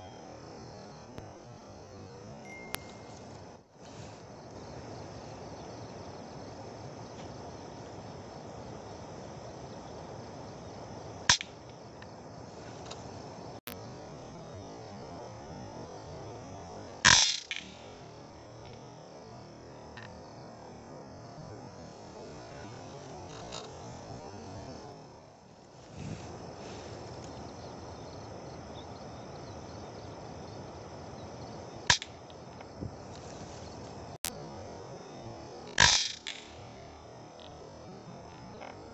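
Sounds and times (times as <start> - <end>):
crickets and insects chirring: 0.0 - 38.9
steady outdoor hiss: 0.0 - 38.9
air rifle shot: 17.1 - 17.8, 35.8 - 36.4.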